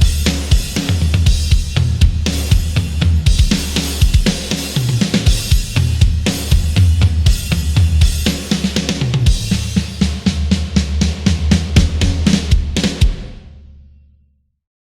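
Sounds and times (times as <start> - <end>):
low bass line: 0.0 - 3.7
rock drum kit groove: 0.0 - 13.7.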